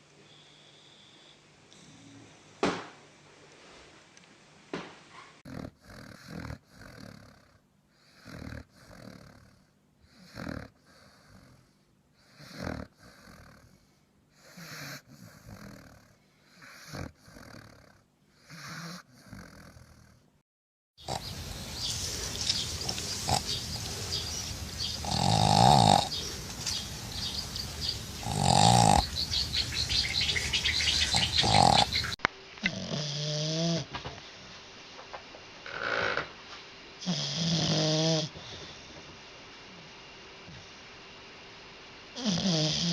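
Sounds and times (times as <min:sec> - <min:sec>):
dog snoring: 0:05.4 - 0:20.3, 0:21.0 - 0:21.4, 0:22.1 - 0:33.9, 0:35.7 - 0:36.3, 0:37.0 - 0:38.8, 0:42.2 - 0:42.9.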